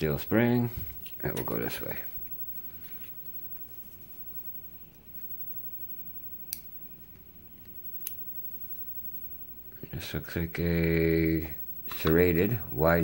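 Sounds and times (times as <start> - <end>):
small sharp clicks: 6.4 - 8.2.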